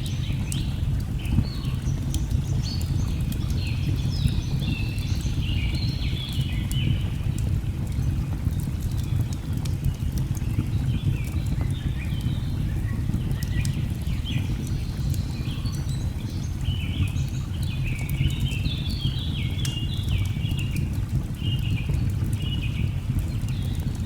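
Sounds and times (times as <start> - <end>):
log fire crackling: 6.7 - 24.0.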